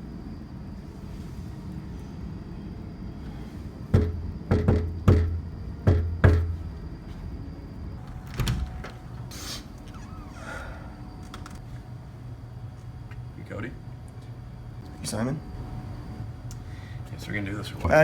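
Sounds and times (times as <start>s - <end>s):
knocking on a door: 3.9s - 6.6s.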